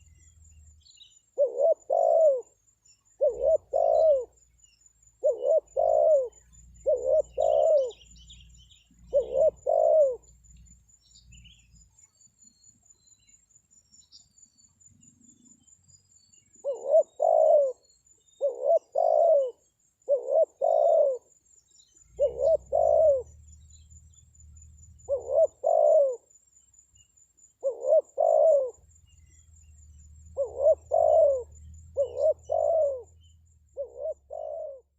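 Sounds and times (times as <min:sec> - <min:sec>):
dove cooing: 0:01.4 - 0:02.6, 0:03.2 - 0:04.4, 0:05.2 - 0:10.4, 0:16.6 - 0:21.3, 0:22.0 - 0:26.3, 0:27.6 - 0:34.9.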